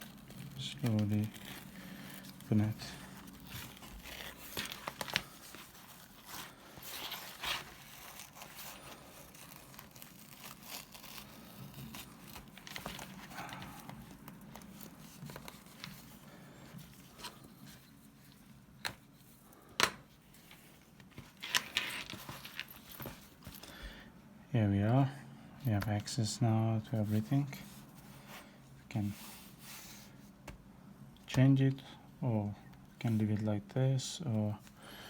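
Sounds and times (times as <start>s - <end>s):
leather rustling and tearing: 0.0s - 19.2s, 20.3s - 23.7s.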